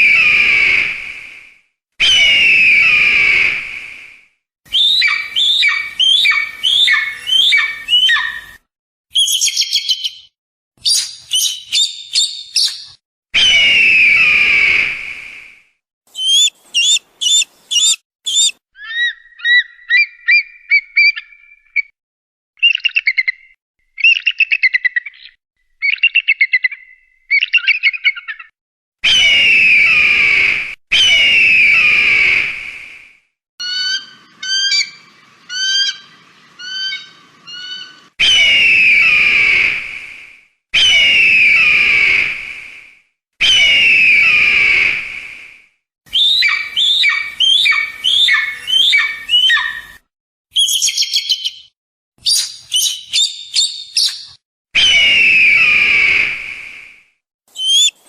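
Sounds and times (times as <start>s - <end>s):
whistled bird calls: 0.0s - 1.3s, 2.0s - 4.1s, 4.7s - 22.0s, 22.6s - 33.0s, 33.6s - 40.1s, 40.8s - 42.8s, 43.4s - 45.5s, 46.1s - 56.8s, 57.5s - 58.0s
bird chirps and trills: 4.7s - 14.4s, 16.1s - 21.9s, 22.6s - 28.5s, 33.6s - 39.3s, 46.1s - 55.1s, 57.5s - 58.0s.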